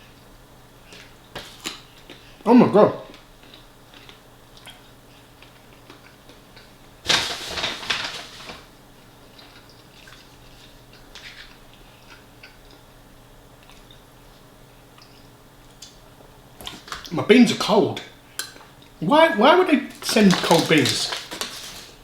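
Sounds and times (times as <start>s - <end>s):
food crunching: 9.2s - 12.9s, 19.8s - 22.0s
mouth clicks and chewing: 13.6s - 14.1s, 15.0s - 16.0s.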